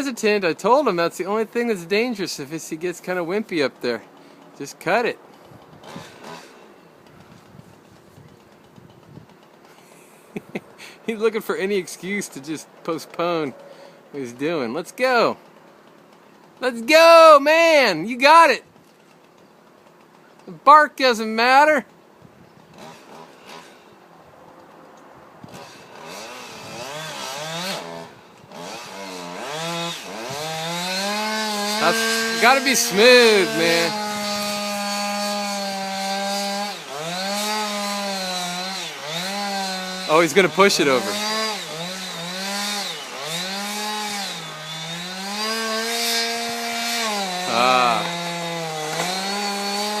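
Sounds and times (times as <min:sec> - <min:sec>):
chainsaw cutting tree trunk: 0:05.2 - 0:09.9, 0:22.6 - 0:24.8, 0:25.4 - 0:50.0.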